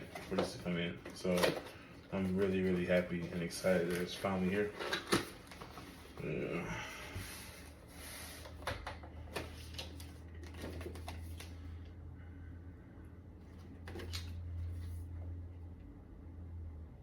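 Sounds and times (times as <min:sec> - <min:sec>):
cardboard packaging rustling: 0:00.0 - 0:06.4, 0:07.3 - 0:11.5
steady low hum: 0:00.0 - 0:17.0.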